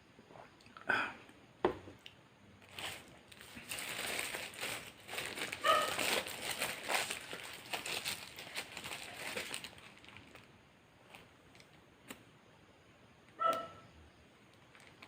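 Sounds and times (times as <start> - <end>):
paper food wrapping crinkling: 2.6 - 11.8, 14.5 - 15.0.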